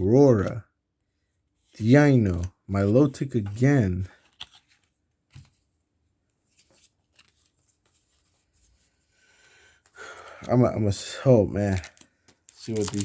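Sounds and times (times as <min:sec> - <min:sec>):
trading cards rustling: 0:01.6 - 0:05.7, 0:06.4 - 0:09.0, 0:09.8 - 0:13.0.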